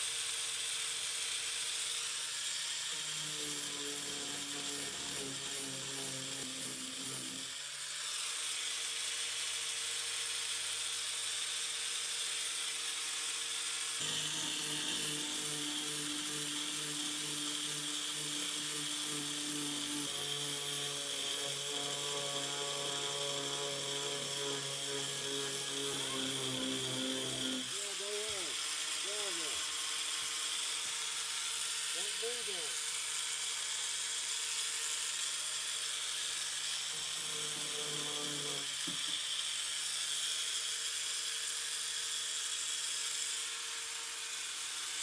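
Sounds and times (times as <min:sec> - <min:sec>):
electric sander running: 0:02.9 - 0:07.5, 0:14.0 - 0:31.0, 0:36.9 - 0:39.1.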